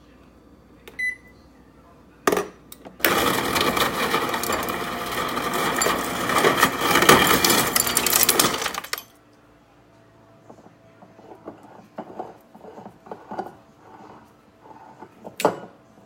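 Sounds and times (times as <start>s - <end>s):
clattering and clinking rattle: 5.6s - 9.1s.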